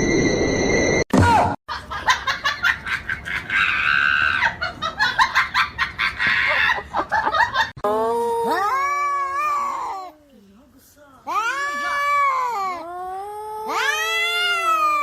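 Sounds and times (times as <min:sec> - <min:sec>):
person laughing hard: 0:01.7 - 0:07.9.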